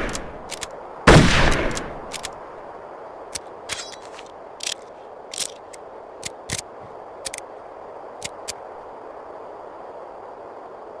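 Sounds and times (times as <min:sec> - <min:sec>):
rifle bolt metallic clicks: 0:00.0 - 0:00.8, 0:01.5 - 0:02.4, 0:03.3 - 0:07.4
steady hiss: 0:00.0 - 0:11.0.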